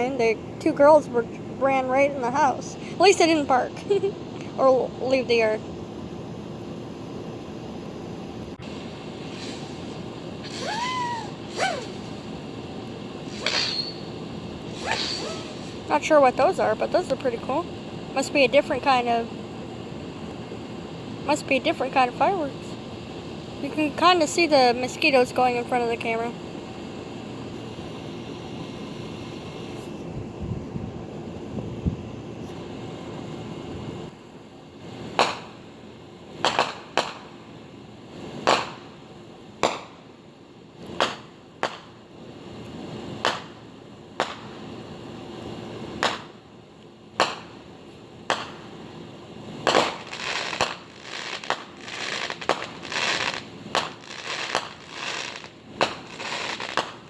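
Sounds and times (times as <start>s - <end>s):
crackling fireworks bangs: 8.6s - 17.6s, 35.0s - 35.6s, 36.4s - 37.4s, 38.4s - 39.0s, 39.6s - 40.1s, 40.9s - 42.0s, 43.2s - 43.6s, 44.2s - 44.7s, 45.9s - 46.4s, 47.2s - 47.6s, 48.2s - 48.7s, 49.6s - 57.0s
fireworks bangs: 8.7s - 12.3s, 13.2s - 14.1s, 14.7s - 16.4s, 35.1s - 35.6s, 36.4s - 37.3s, 38.4s - 38.8s, 41.0s - 41.9s, 43.2s - 43.6s, 44.2s - 44.6s, 47.2s - 47.5s, 48.3s - 48.6s, 49.6s - 57.0s.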